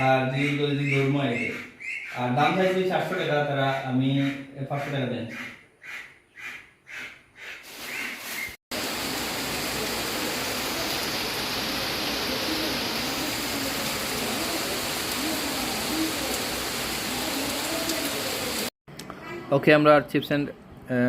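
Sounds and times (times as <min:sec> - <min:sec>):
heavy rain falling: 0:08.7 - 0:18.7.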